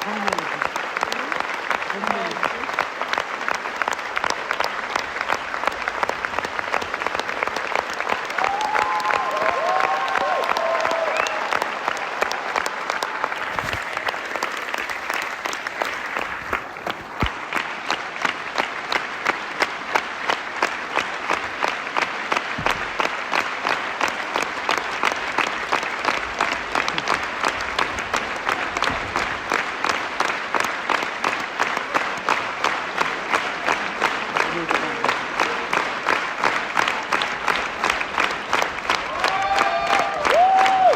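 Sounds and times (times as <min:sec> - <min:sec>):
audience applauding: 0:00.0 - 0:40.9.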